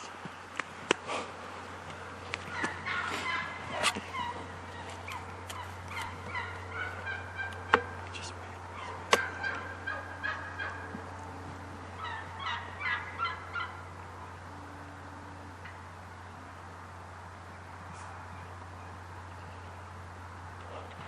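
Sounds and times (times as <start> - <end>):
turkeys gobbling: 1.6 - 14.6.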